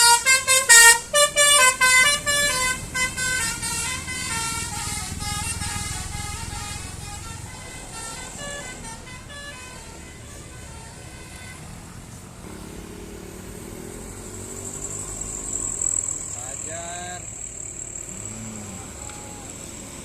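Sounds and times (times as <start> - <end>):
bus horn melody: 0.0 - 12.6
bus engine accelerating: 0.0 - 20.0.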